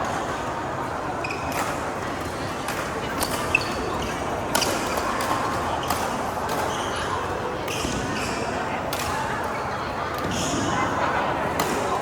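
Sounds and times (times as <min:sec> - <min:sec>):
shoe squeaks on court: 0:03.2 - 0:04.7.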